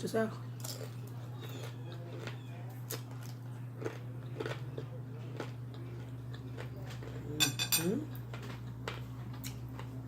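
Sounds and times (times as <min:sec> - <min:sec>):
steady low hum: 0:00.0 - 0:10.0
person chewing food: 0:00.5 - 0:10.0.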